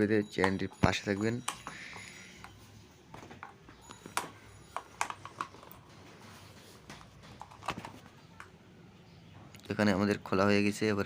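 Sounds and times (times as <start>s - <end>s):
clicks and knocks of fan parts: 0.4s - 8.5s.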